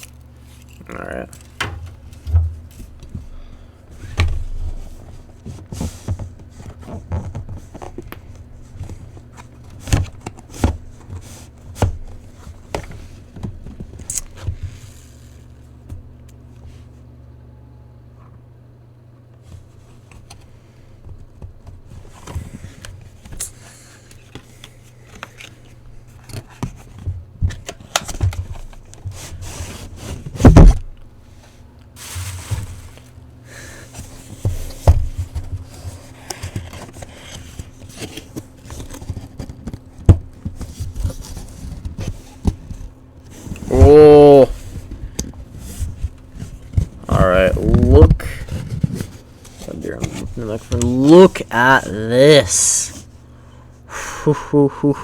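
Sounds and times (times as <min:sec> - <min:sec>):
cardboard box scraping and rustling: 0:32.0 - 0:33.2, 0:33.9 - 0:51.4.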